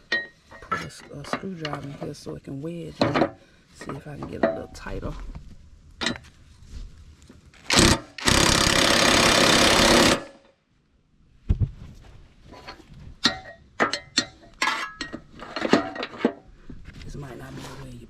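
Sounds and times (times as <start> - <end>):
power tool rattling: 7.7 - 10.5
metal tools clinking: 12.6 - 16.4.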